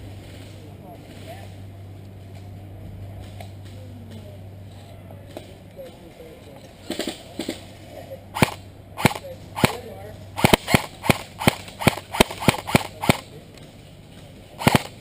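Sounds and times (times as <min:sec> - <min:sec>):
airsoft gun shots: 0:08.4 - 0:13.3, 0:14.6 - 0:15.0.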